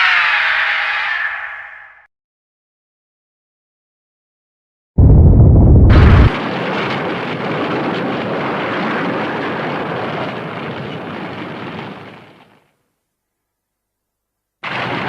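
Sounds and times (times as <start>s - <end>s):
explosion blast: 5.0s - 12.2s, 14.6s - 15.0s
rushing rumble: 5.0s - 12.5s.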